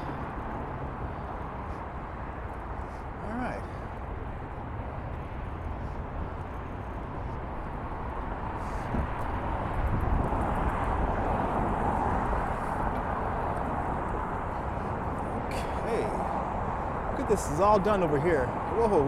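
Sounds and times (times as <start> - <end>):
traffic rumble: 0.0 - 19.0.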